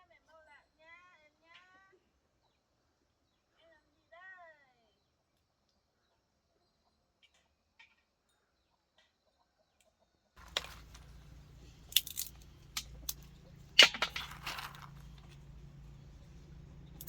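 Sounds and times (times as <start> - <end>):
low steady hum: 10.4 - 17.0
sharp cracks and knocks: 10.4 - 17.0.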